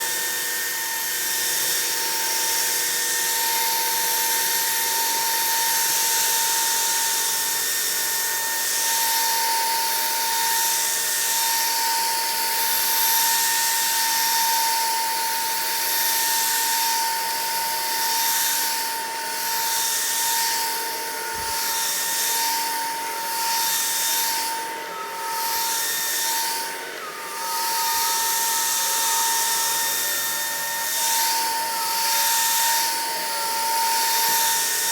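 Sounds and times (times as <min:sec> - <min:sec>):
vacuum cleaner motor whine: 0:00.0 - 0:34.9.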